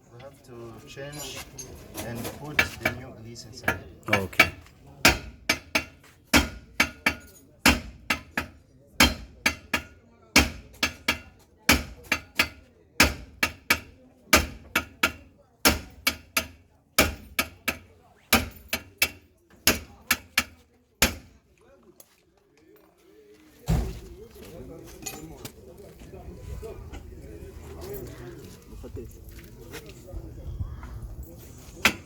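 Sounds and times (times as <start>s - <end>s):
hammering metal on metal: 2.5s - 3.0s, 3.6s - 21.4s.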